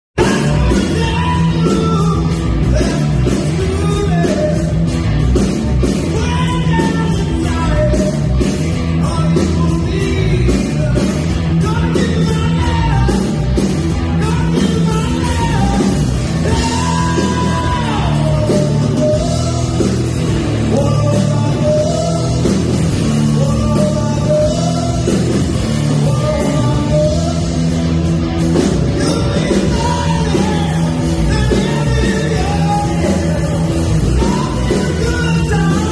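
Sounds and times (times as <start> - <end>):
rock song with singer and band: 0.2 - 35.9.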